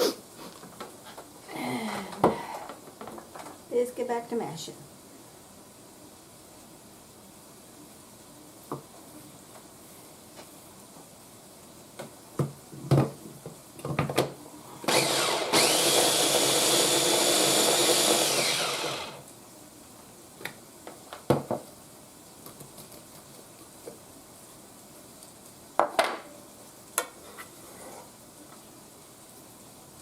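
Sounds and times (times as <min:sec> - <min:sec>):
electric chopper blending beans: 0:14.8 - 0:19.2.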